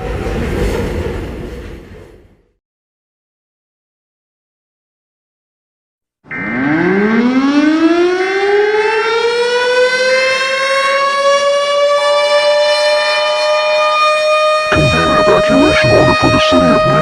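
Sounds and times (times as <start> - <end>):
civil defense siren wailing: 6.3 - 14.7.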